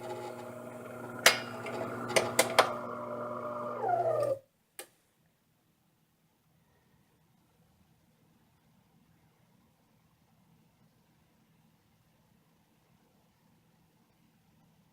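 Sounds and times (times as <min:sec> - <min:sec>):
coffee machine humming: 0:00.0 - 0:04.4
motor winding down whine: 0:00.0 - 0:04.4.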